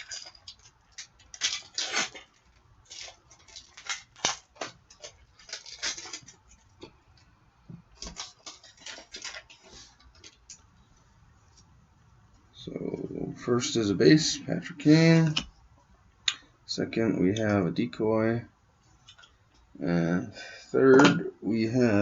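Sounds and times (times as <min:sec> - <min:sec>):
card wrapper crinkling and ripping: 0:00.0 - 0:06.8, 0:07.9 - 0:10.5.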